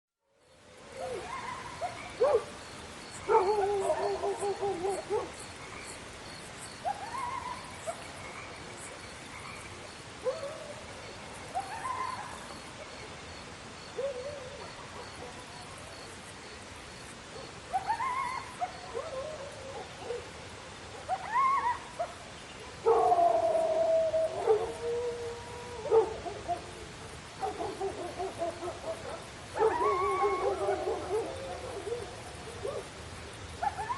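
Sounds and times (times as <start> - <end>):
dogs barking: 1.4 - 2.5, 3.2 - 5.3, 25.8 - 26.6, 27.4 - 32.9
dog howling: 27.4 - 32.1.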